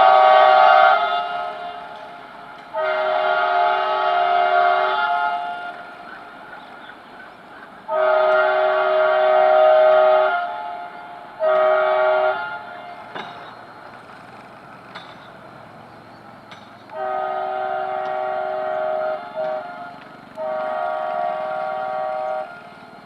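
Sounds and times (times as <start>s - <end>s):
locomotive air horn blasts: 0.0s - 6.0s, 7.9s - 13.2s, 16.9s - 22.8s.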